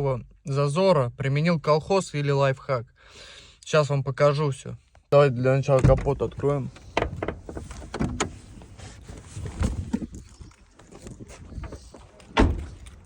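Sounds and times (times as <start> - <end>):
bonnet latch clicks and clunks: 5.7 - 8.8, 12.3 - 13.0.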